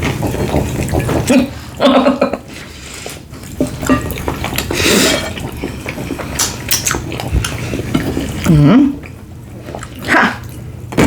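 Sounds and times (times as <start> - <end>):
wet chewing and mouth noises: 2.6 - 11.0.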